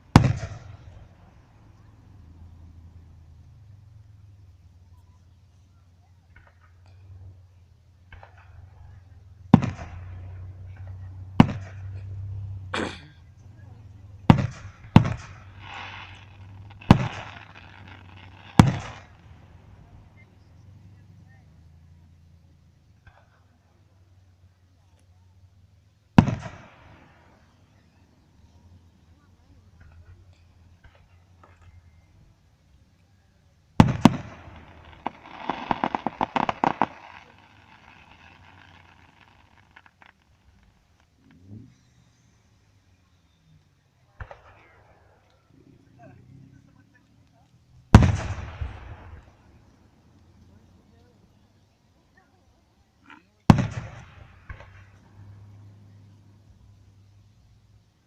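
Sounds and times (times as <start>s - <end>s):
fireworks bangs echoing: 0.0s - 4.4s, 8.0s - 21.0s, 26.1s - 32.0s, 33.7s - 41.8s, 44.1s - 45.3s, 47.8s - 51.5s, 53.4s - 56.0s
fireworks crackling: 0.0s - 58.0s.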